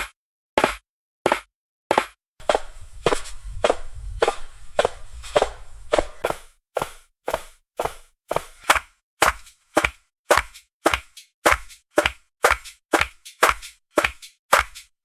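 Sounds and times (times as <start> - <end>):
footsteps on gangway: 2.4 - 8.7.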